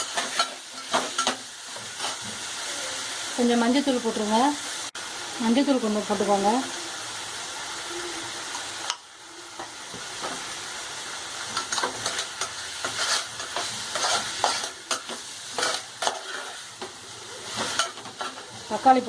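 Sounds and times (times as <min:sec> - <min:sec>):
chicken sizzling in hot oil: 0:00.0 - 0:19.0
utensil scraping and knocking pan: 0:11.6 - 0:16.6.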